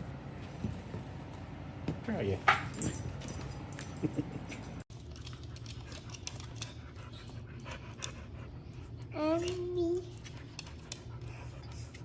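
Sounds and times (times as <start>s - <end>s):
dog panting: 10.2s - 12.0s.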